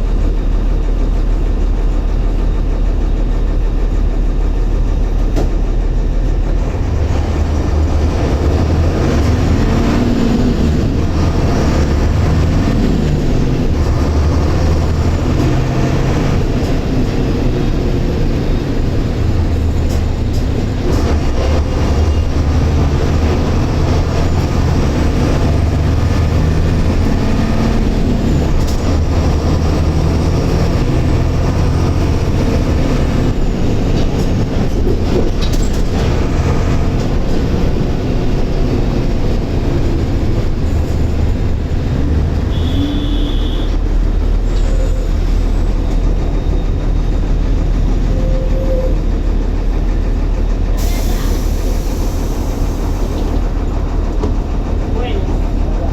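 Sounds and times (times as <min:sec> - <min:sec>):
bus diesel engine running: 0:00.0 - 0:55.9
rattle of moving bus: 0:00.0 - 0:55.9.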